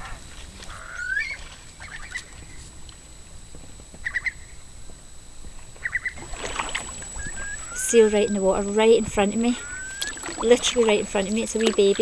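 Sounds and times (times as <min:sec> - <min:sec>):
birds calling: 0:00.0 - 0:02.6, 0:04.0 - 0:04.6, 0:05.8 - 0:12.0.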